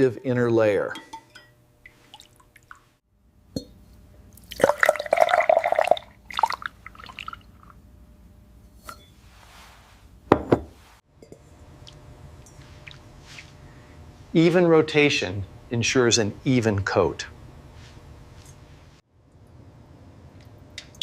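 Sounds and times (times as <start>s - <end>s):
liquid splashing inside glass: 1.8s - 2.9s, 4.4s - 7.8s.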